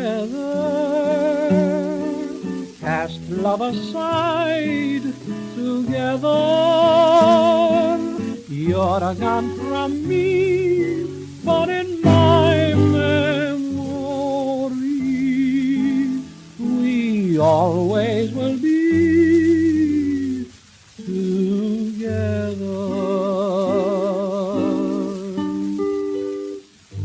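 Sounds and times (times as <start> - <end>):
slow ballad music: 0.0 - 27.0.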